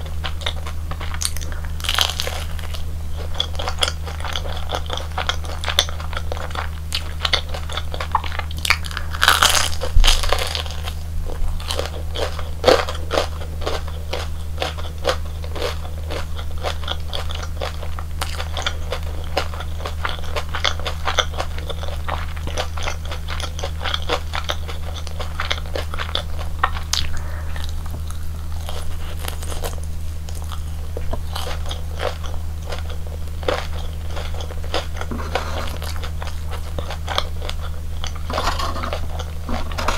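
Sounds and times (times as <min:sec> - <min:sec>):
steady low hum: 0:00.0 - 0:39.9
crunching crisp snack food: 0:00.1 - 0:39.9.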